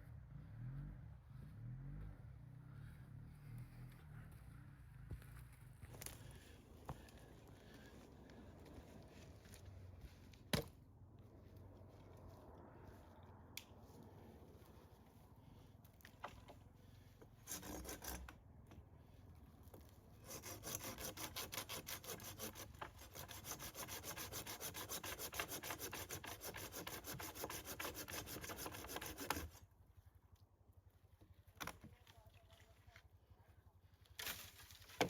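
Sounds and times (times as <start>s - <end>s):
hand tool rasping on wood: 17.4s - 18.3s, 20.2s - 29.6s.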